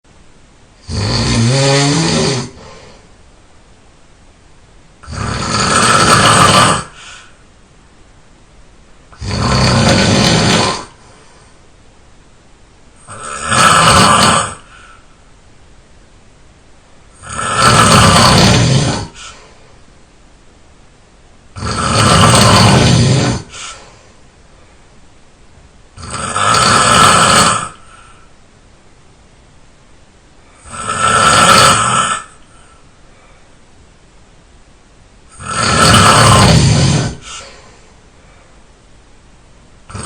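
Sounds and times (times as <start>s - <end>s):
person snoring: 0.8s - 3.1s, 5.0s - 7.4s, 9.1s - 11.3s, 13.0s - 15.1s, 17.1s - 19.6s, 21.5s - 24.1s, 26.0s - 28.3s, 30.5s - 32.8s, 35.3s - 37.9s.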